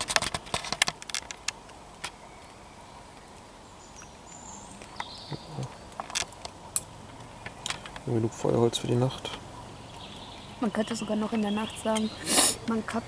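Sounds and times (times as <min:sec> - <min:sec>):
light clicks and rustles: 0:00.0 - 0:02.2, 0:04.8 - 0:08.1
faint steady hiss: 0:00.0 - 0:13.0.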